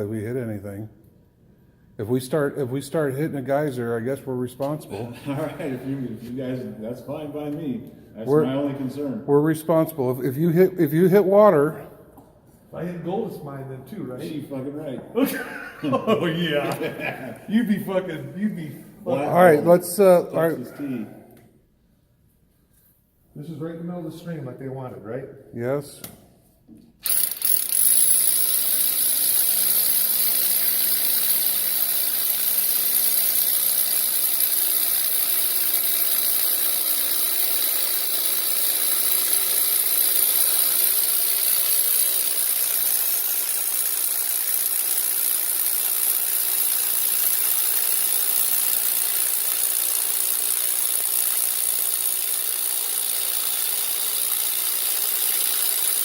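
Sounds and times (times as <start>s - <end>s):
electric drill boring into floor: 27.0s - 56.0s.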